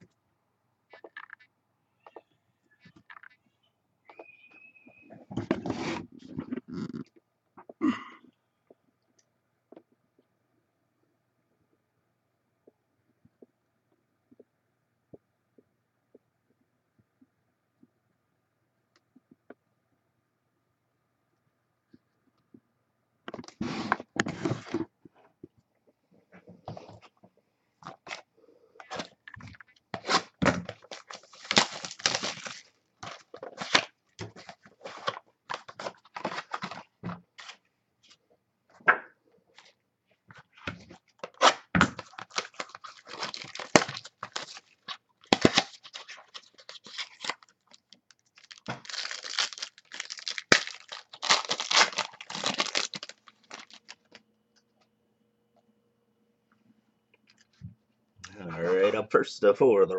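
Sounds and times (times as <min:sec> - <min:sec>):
card wrappers tearing and crinkling: 0:30.0 - 0:37.6, 0:41.2 - 0:54.2.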